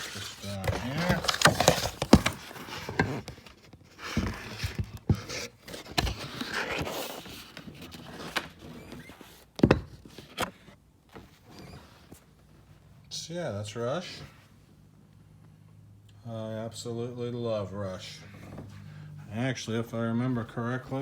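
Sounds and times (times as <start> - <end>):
packaging rustling: 0.0 - 8.6.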